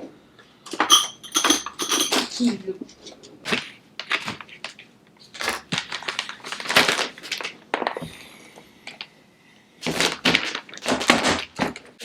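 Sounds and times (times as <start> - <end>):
wrapping paper crinkling: 3.4 - 8.0, 9.8 - 12.0.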